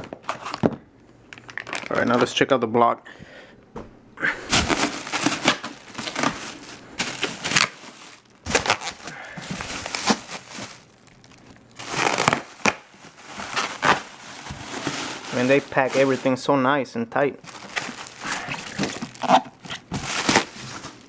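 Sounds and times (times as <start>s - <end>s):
cardboard box rustling and crinkling: 1.5s - 2.1s, 4.5s - 16.4s, 17.4s - 21.0s.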